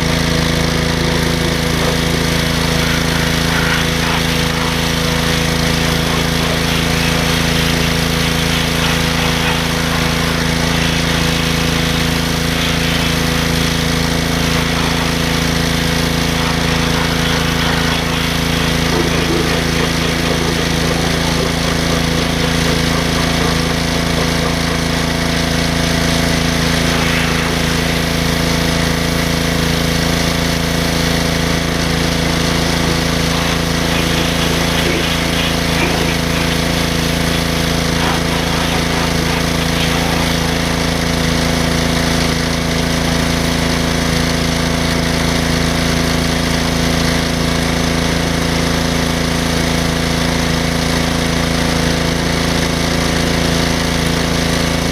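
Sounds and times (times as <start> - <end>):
pressure washer motor hum: 0.0 - 54.9
water jet hissing on metal: 1.0 - 42.2.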